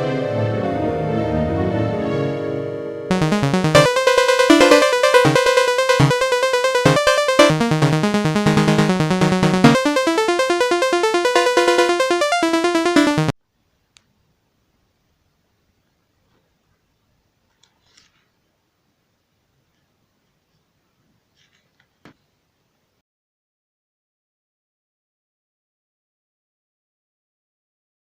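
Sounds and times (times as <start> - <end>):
synthesizer music: 3.1 - 13.3
faint click: 13.9 - 14.1.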